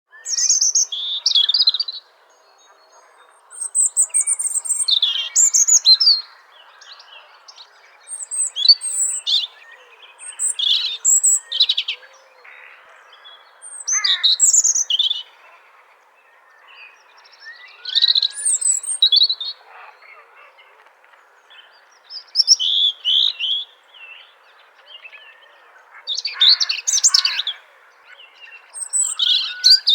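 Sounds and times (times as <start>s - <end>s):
robin singing: 0.1s - 20.7s, 21.4s - 29.9s.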